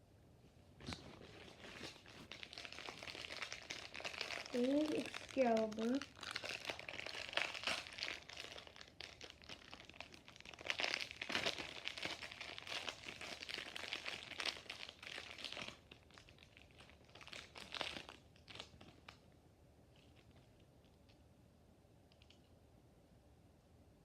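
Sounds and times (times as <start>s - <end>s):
plastic packaging crinkling: 0.8s - 19.3s.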